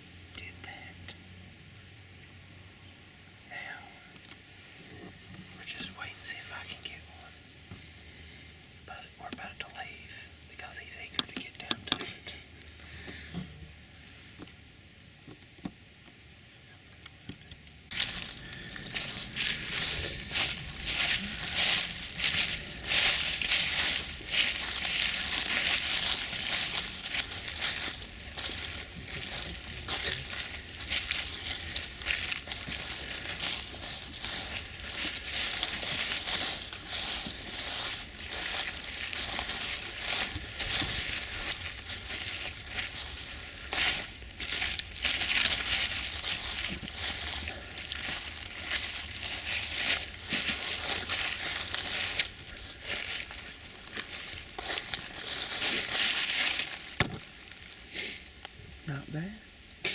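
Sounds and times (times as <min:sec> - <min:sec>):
footsteps crunching through dry leaves: 0:17.9 - 0:58.5.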